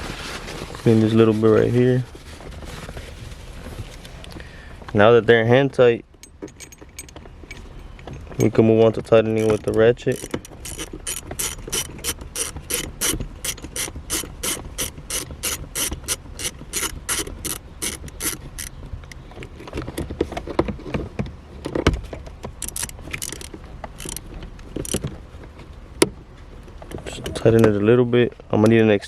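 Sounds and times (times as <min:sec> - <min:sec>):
hand ratchet clicking: 0:09.3 - 0:19.2, 0:22.6 - 0:25.0.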